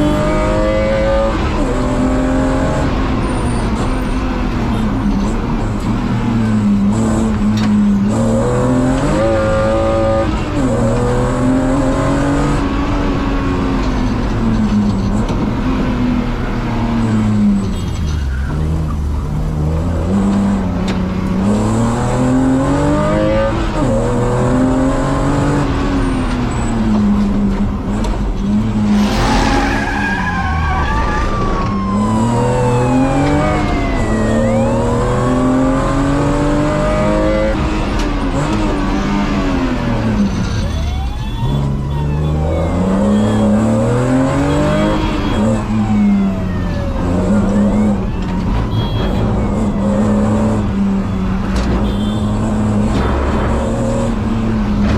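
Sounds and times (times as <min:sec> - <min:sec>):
car engine accelerating: 0:18.2 - 0:40.5
tyre squeals: 0:28.9 - 0:31.6
police siren: 0:28.9 - 0:37.6, 0:40.5 - 0:52.3.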